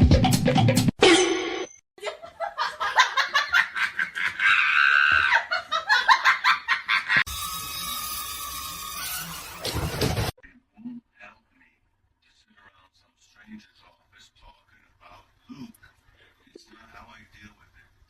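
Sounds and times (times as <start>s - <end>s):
drum-heavy music: 0.0s - 0.9s
person laughing hard: 2.0s - 7.3s.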